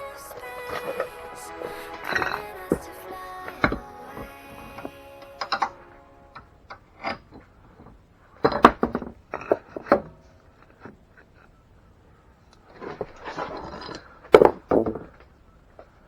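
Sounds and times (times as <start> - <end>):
background music: 0.0 - 6.6
wooden knocks and clatter: 7.8 - 10.2.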